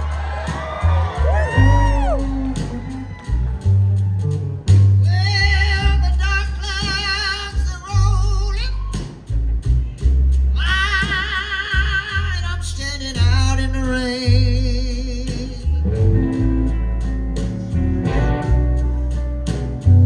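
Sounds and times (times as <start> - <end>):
heavy bass line: 0.0 - 20.0
live blues band playing: 0.0 - 20.0
wavering lead guitar: 0.7 - 4.6, 15.8 - 20.0.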